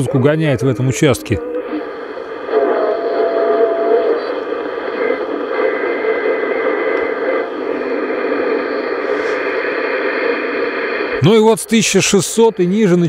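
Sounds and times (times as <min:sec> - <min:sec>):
radio band noise hiss: 0:00.0 - 0:13.0
faint radio whistle: 0:01.7 - 0:09.7
higher radio whistle: 0:02.5 - 0:07.4.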